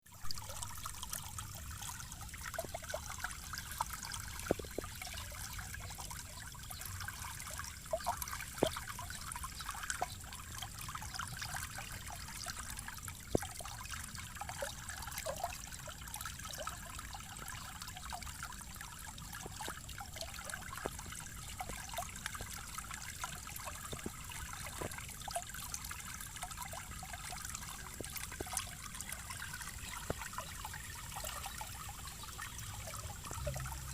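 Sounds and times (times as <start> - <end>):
water trickling and splashing: 0.0 - 33.9
low rushing water rumble: 19.0 - 33.9.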